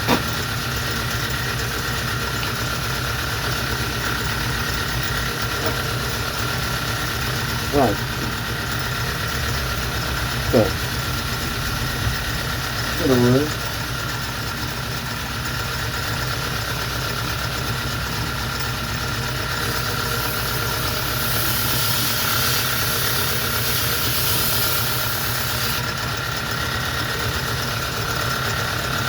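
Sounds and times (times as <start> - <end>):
belt grinder humming: 2.8 - 29.0
steel grinding hiss: 19.4 - 25.8.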